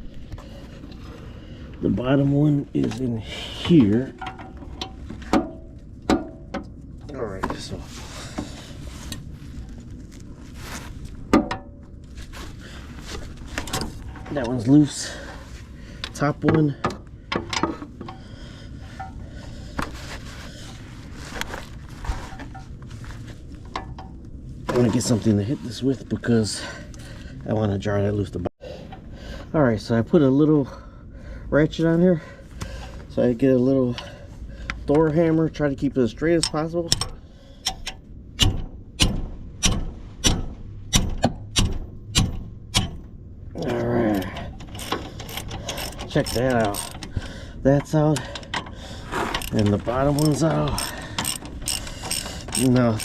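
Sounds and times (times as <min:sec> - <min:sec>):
hammer striking metal ratchet: 0:36.4 - 0:43.0, 0:44.7 - 0:47.1, 0:49.4 - 0:53.0
breaker bar metallic clicks and knocks: 0:36.4 - 0:43.1.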